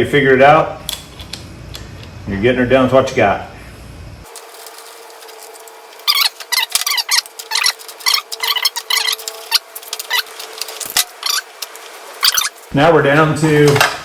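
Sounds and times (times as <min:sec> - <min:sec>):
faint steady hum: 0:00.0 - 0:11.2
metal hardware and tools clinking: 0:13.5 - 0:14.0.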